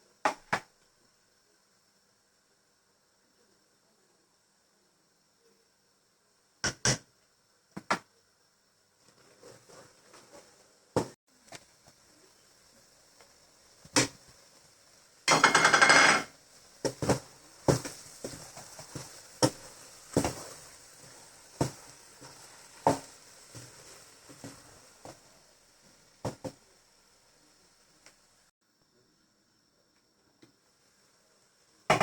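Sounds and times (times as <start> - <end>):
kitchen utensils knocking cookware: 15.3 - 16.3.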